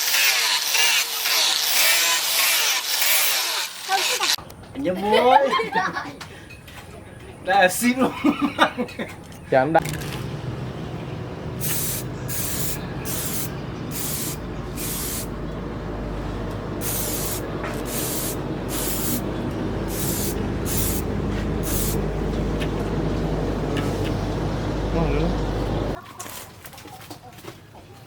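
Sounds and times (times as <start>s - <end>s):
low machine hum: 10.1s - 26.0s
short bursts of hissing spray: 11.6s - 15.3s, 16.8s - 19.2s, 19.9s - 21.0s, 21.6s - 22.0s.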